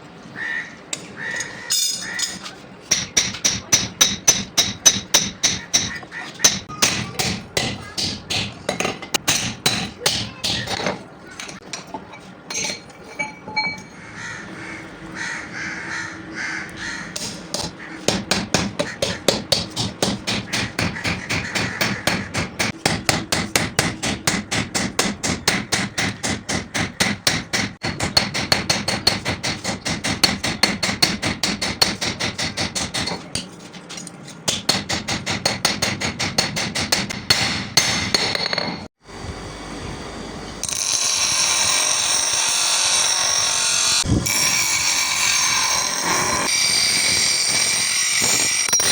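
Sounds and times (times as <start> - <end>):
hammer striking steel on anvil: 1.7 - 10.9, 17.2 - 33.5.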